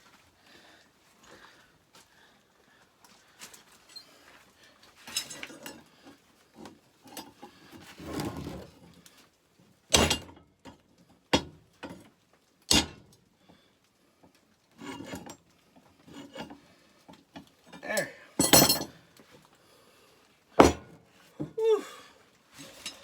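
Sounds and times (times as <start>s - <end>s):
metal tools clinking and scraping: 5.0s - 5.9s, 14.8s - 15.4s, 17.4s - 19.0s, 22.6s - 23.0s.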